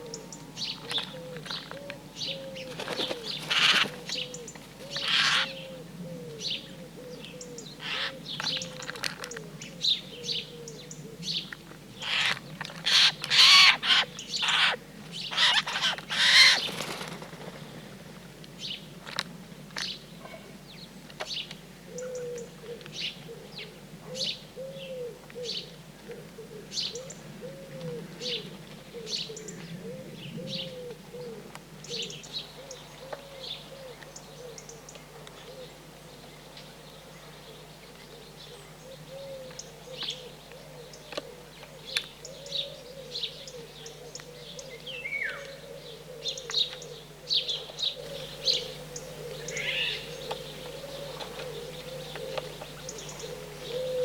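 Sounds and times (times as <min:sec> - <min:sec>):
birds chirping: 0:00.0 - 0:05.8, 0:12.0 - 0:17.3, 0:41.8 - 0:54.0
bird wings flapping: 0:02.7 - 0:04.9, 0:16.2 - 0:17.9.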